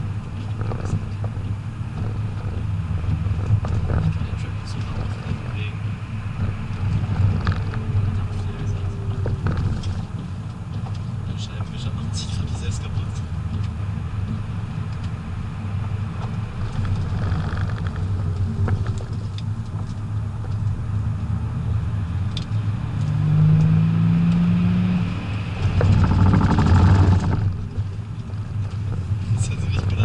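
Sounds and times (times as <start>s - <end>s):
diesel engine pulling at speed: 0.0s - 30.0s
road noise inside car: 0.0s - 30.0s
rising tone: 22.6s - 27.6s.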